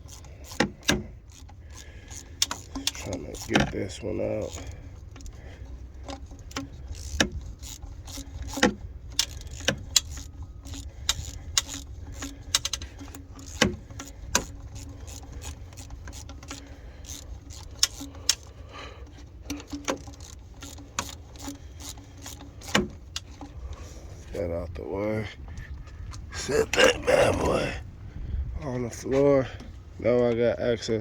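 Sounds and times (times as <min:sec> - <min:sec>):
hand ratchet clicking: 0:00.0 - 0:23.6.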